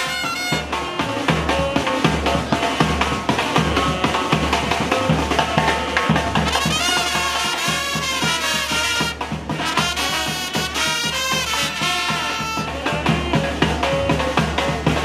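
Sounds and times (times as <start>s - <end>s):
horns with wavering notes: 0.0s - 1.1s, 6.4s - 12.9s
fast steady drum beat: 0.0s - 15.0s.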